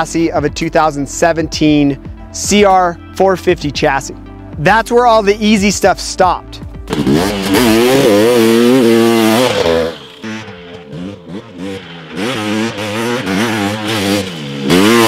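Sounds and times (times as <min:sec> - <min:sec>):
two-stroke engine revving: 0:06.9 - 0:15.0.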